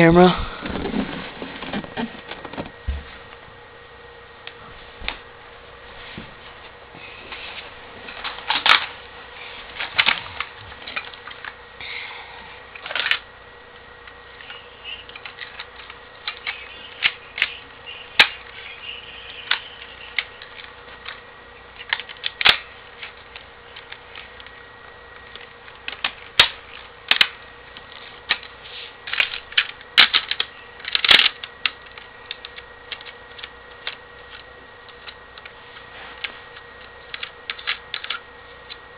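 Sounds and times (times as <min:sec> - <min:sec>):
rifle parts clicking and snapping: 0:12.8 - 0:13.2, 0:21.8 - 0:24.5, 0:25.2 - 0:28.5, 0:29.1 - 0:35.5, 0:36.8 - 0:38.8.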